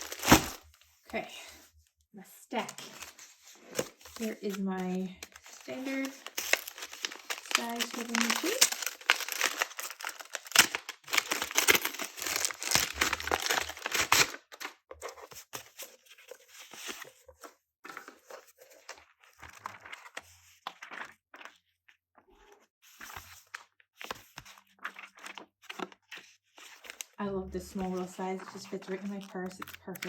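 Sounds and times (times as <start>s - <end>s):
packaging crinkling and tearing: 0.0s - 0.8s, 2.7s - 17.0s, 23.0s - 30.0s.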